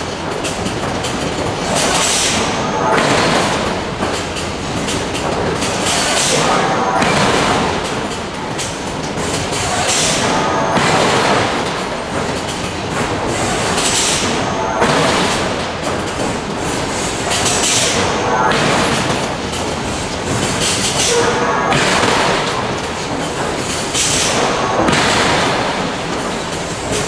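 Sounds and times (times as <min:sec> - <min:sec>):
heavy machinery noise: 0:00.0 - 0:27.0.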